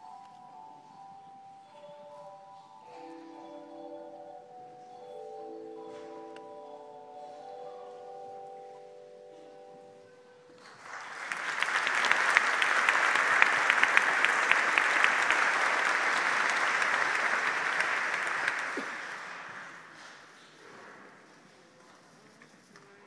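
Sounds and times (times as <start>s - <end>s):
hand bell choir ringing: 0.0s - 10.4s
audience applause: 10.6s - 20.0s.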